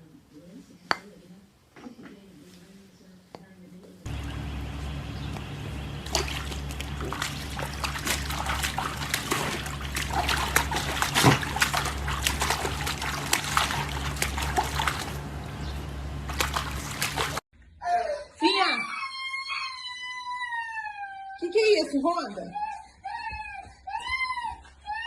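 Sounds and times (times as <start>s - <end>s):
steady low hum: 4.1s - 17.4s
water splashing and trickling: 4.1s - 17.4s.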